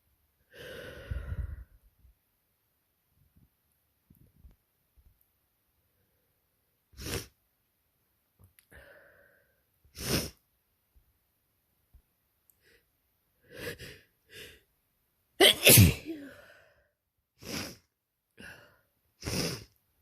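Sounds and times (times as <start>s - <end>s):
person breathing: 0.4s - 1.9s, 8.7s - 10.4s, 12.6s - 14.7s, 16.0s - 19.8s
drawn-in breath: 0.5s - 1.8s, 8.7s - 10.4s, 12.6s - 14.6s
person sneezing: 15.4s - 16.5s.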